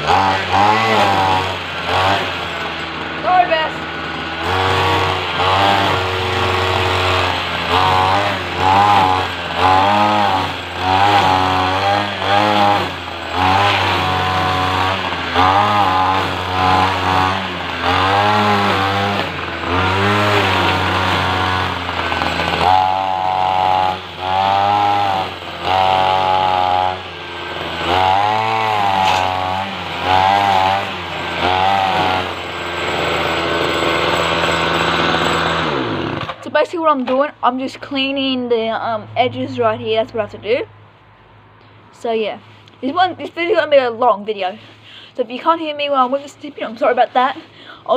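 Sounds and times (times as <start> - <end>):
string trimmer engine revving: 0.0 - 36.6.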